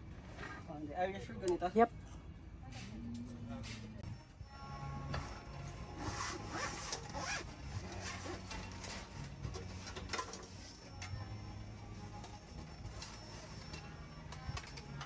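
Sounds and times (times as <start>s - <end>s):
zipper being pulled: 6.0s - 8.8s.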